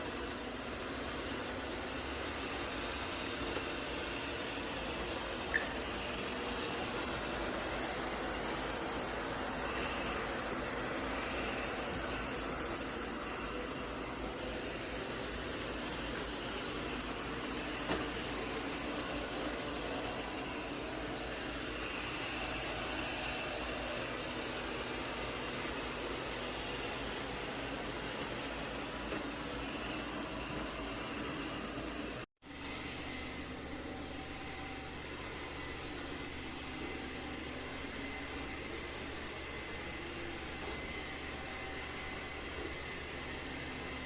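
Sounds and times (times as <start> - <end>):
robot vacuum whirring: 0.0 - 32.1
brief click: 5.5 - 5.8.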